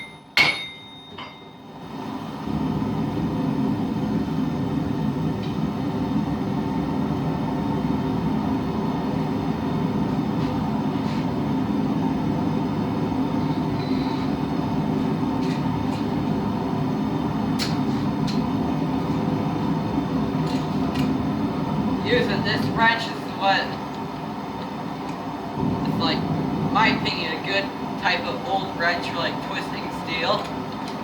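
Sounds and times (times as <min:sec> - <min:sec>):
forge roaring: 0:21.2 - 0:29.4.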